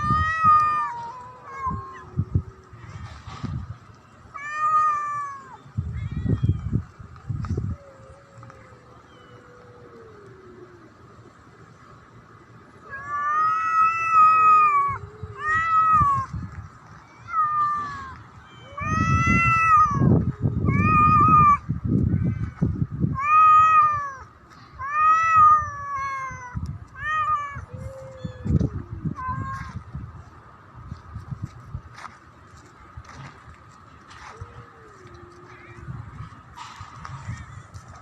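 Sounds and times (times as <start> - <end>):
cat yowling: 0.0 - 2.4, 12.9 - 16.3, 17.2 - 21.6, 24.8 - 29.7.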